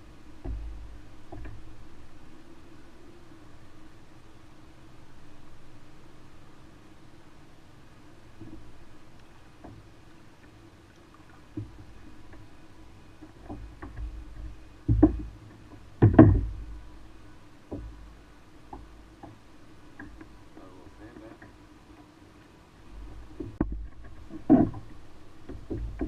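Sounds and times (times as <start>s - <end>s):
gear knocking against kayak hull: 0.4s - 1.7s, 13.2s - 16.8s, 23.3s - 26.0s.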